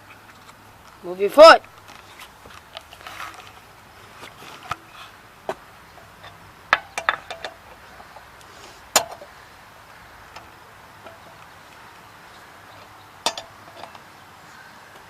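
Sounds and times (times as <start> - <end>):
lug wrench clinking on lug nuts: 5.9 - 8.3, 8.9 - 9.3, 10.2 - 11.8, 12.7 - 14.1.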